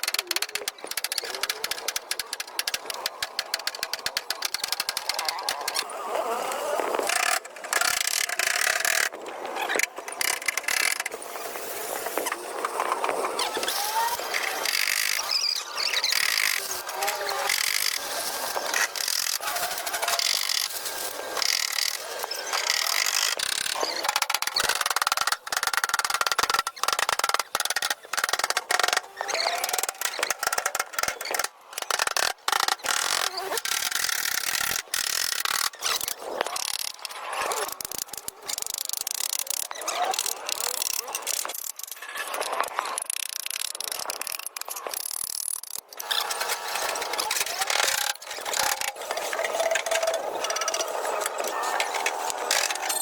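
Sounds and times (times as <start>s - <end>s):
ratchet clicking: 21.4s - 42.0s, 42.9s - 46.2s.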